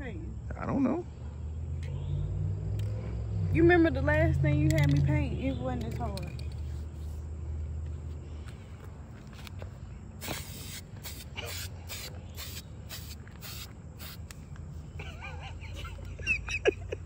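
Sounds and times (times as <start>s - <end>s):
spray paint can hissing: 10.2s - 14.4s.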